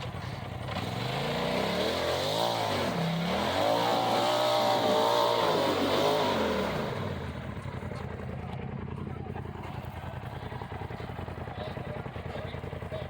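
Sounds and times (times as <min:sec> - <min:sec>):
utility vehicle engine revving: 0:00.0 - 0:08.2.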